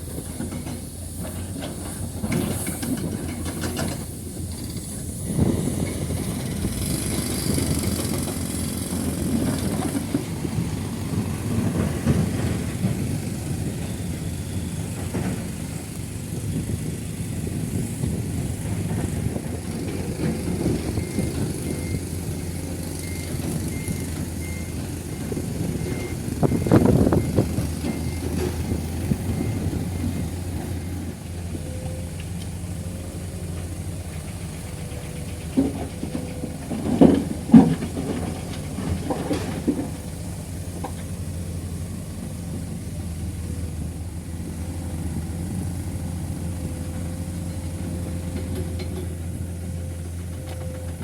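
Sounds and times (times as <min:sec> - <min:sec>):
diesel construction machinery running: 0:00.0 - 0:51.0
reversing alarm beeping: 0:19.0 - 0:33.2.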